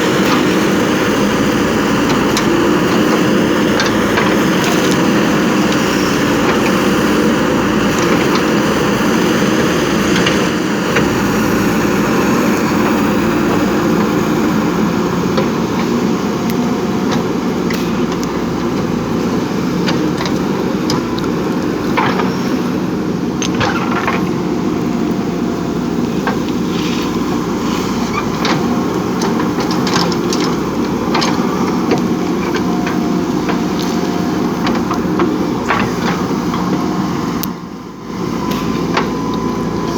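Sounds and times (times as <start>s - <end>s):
diesel engine running: 0.0s - 39.9s
knocks and clanks: 23.4s - 24.4s.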